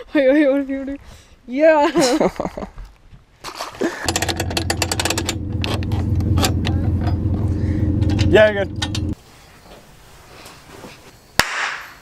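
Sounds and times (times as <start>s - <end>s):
motor humming and clattering: 4.1s - 9.2s.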